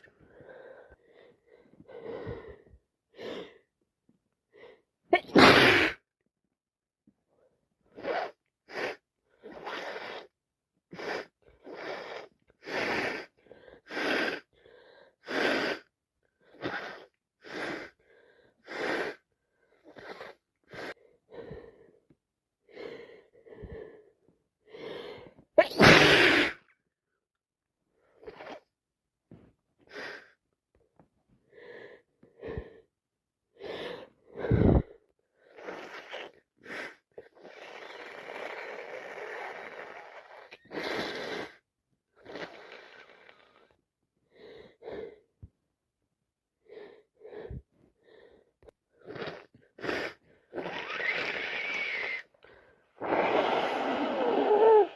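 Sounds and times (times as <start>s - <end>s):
woman sneezing: 5.1s - 6.0s, 25.6s - 26.7s
woman sniffing: 49.0s - 52.3s, 53.0s - 54.9s.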